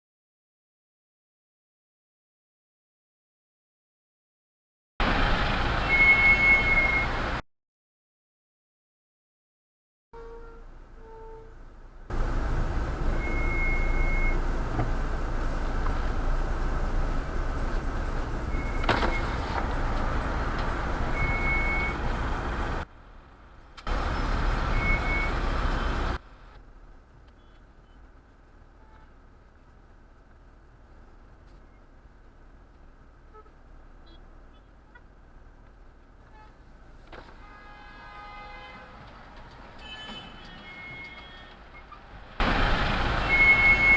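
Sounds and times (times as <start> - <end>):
brakes squealing: 5.0 - 7.4, 10.2 - 22.9, 23.6 - 26.6, 32.8 - 43.9
road and tyre noise: 5.0 - 7.4, 10.2 - 43.9.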